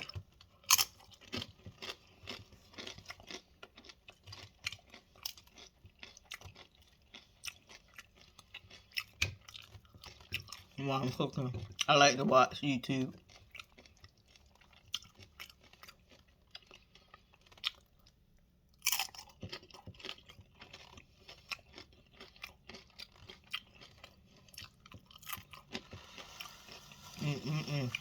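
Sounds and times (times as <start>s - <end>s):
person crunching chips: 0.0s - 10.3s, 18.7s - 28.0s.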